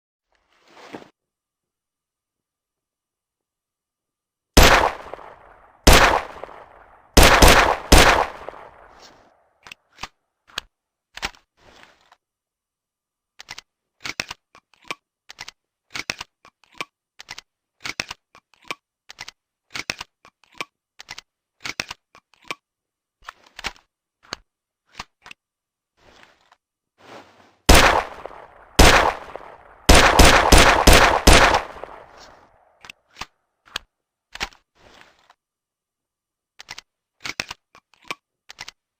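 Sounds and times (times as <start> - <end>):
revolver shots echoing: 4.6 - 8.9, 27.7 - 32.3.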